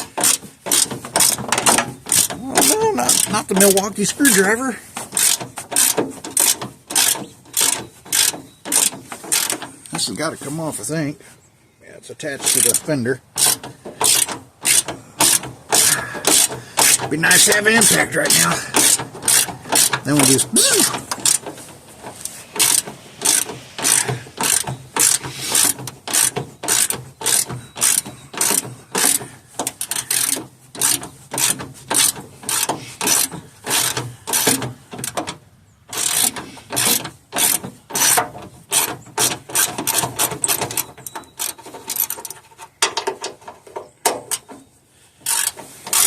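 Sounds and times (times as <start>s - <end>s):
ratchet wrench clicking: 5.2s - 9.6s, 13.4s - 20.0s, 20.7s - 21.4s, 22.6s - 35.2s, 35.9s - 42.3s, 45.2s - 46.0s.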